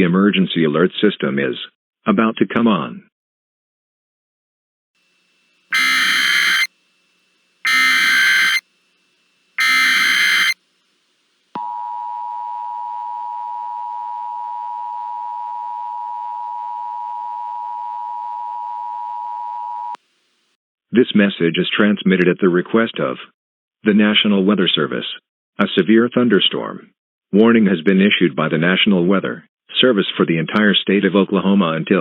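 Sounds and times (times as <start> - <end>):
buzzing data bursts: 5.7 - 6.7, 7.6 - 8.6, 9.6 - 10.6
two-tone attention signal: 5.7 - 6.7, 7.7 - 8.6, 9.6 - 10.6.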